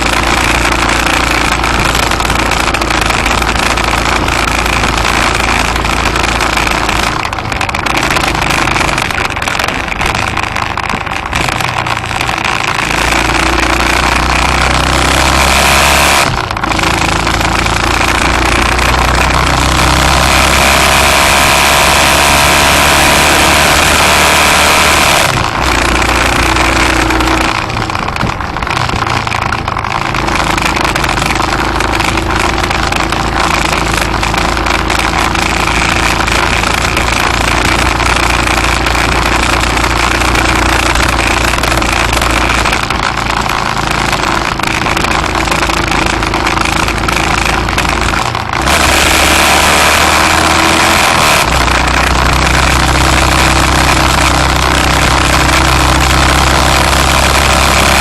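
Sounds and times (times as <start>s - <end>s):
road noise: 0.0s - 58.0s
vehicle engine running: 0.0s - 58.0s.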